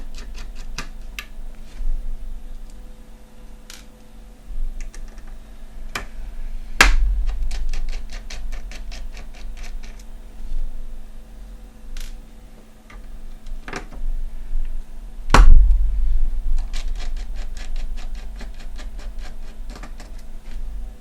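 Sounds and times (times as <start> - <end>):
sharp knock: 6.8 - 7.9, 15.3 - 18.2.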